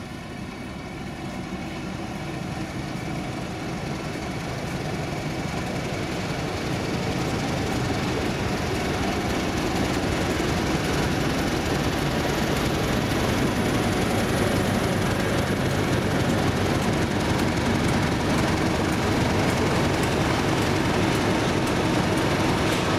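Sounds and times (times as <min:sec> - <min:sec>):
diesel locomotive engine: 0:00.0 - 0:22.9.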